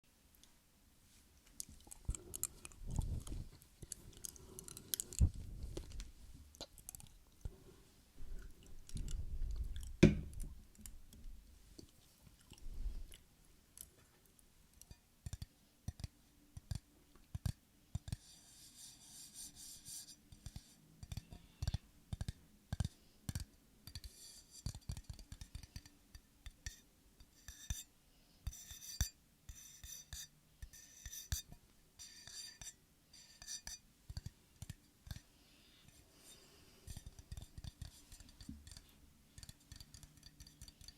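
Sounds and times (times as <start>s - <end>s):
fine scratchy rubbing: 18.2s - 20.8s
sharp taps and clicks on objects: 20.4s - 26.6s.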